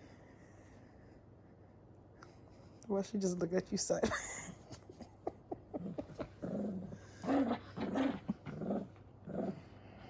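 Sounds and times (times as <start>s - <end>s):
dog growling in play: 5.8s - 10.0s.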